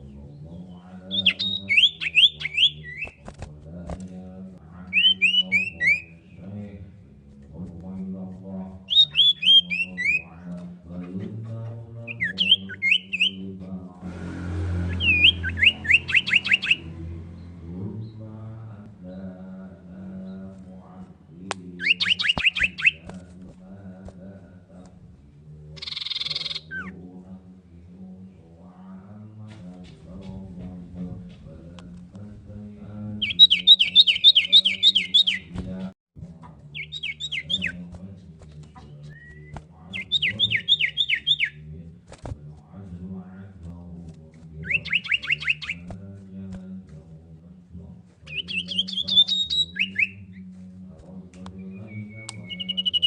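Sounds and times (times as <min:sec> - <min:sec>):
bird whistling falling notes: 0:14.4 - 0:17.1, 0:21.8 - 0:23.0, 0:44.6 - 0:45.8, 0:48.3 - 0:50.2, 0:51.6 - 0:53.0
bird whistling descending notes: 0:14.4 - 0:17.5.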